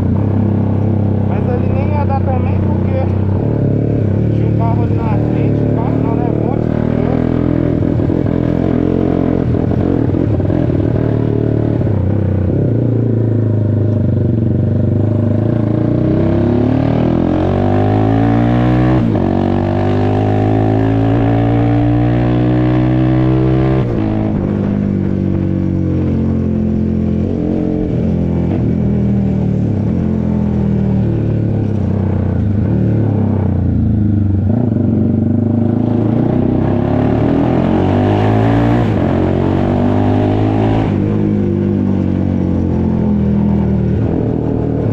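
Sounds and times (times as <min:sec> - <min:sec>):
deep exhaust rumble: 0:00.0 - 0:08.5
motorcycle engine revving: 0:00.0 - 0:44.9.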